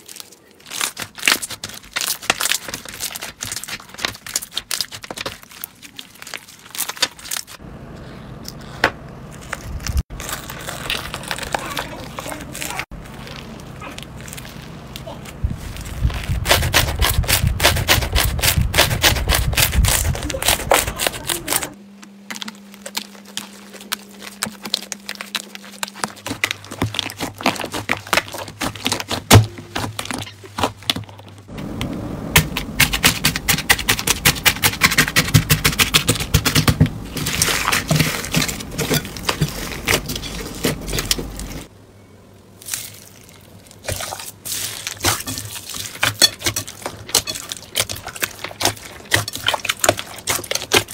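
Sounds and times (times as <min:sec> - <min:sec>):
slime crackling and popping: 0:00.0 - 0:07.6, 0:09.3 - 0:21.6, 0:22.4 - 0:30.7.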